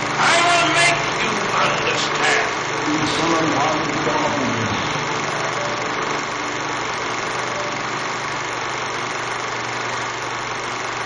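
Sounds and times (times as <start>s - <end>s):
machine whirring with low hum: 0.0s - 11.0s.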